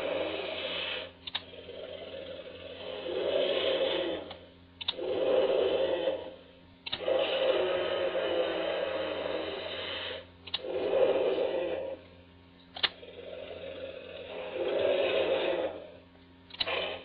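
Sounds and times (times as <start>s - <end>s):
dinosaur roar sound effect: 0.0s - 12.1s, 12.9s - 16.0s, 16.6s - 17.0s
sharp click: 6.8s - 7.0s, 16.5s - 16.7s.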